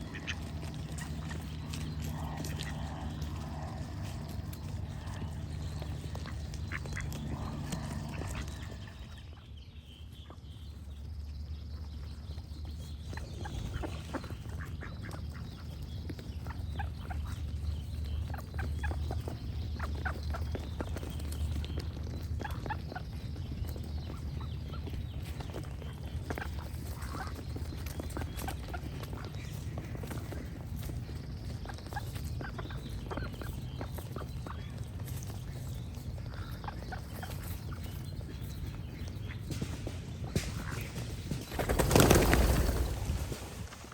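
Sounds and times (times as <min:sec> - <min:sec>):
ducks quacking: 0:00.0 - 0:09.4
faint birdsong: 0:00.0 - 0:43.9.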